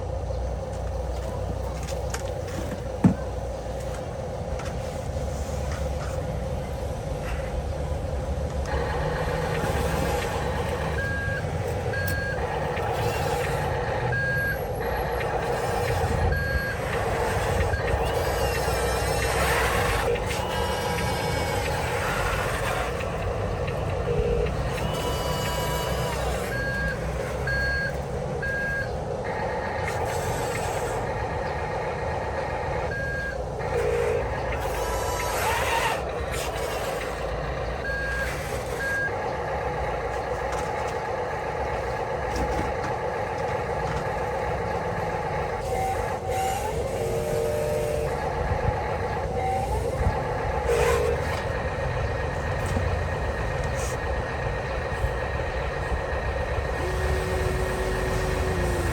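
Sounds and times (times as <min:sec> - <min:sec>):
model construction machines running: 0:00.0 - 0:58.9
high reversing beeps: 0:09.0 - 0:22.4, 0:23.7 - 0:30.6, 0:32.8 - 0:36.0, 0:37.7 - 0:39.2.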